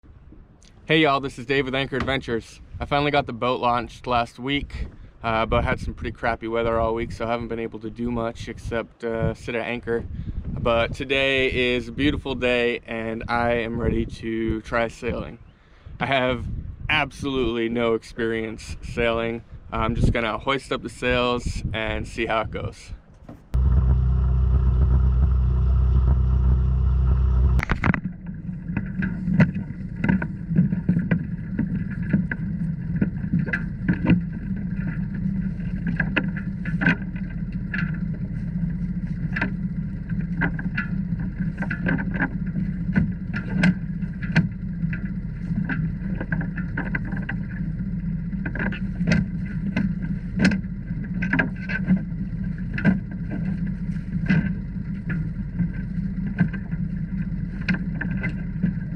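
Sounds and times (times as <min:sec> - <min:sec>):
knocks and clanks: 0:23.2 - 0:32.4
steady low hum: 0:23.4 - 0:58.9.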